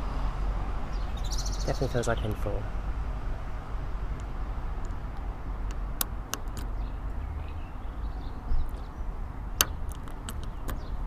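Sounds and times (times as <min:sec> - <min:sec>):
lock pick metallic clicks: 0:04.2 - 0:06.8, 0:09.6 - 0:11.0.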